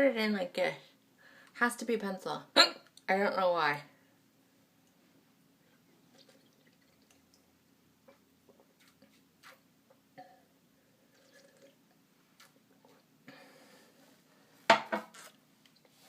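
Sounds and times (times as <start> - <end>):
person sipping and swallowing water: 10.2 - 13.1.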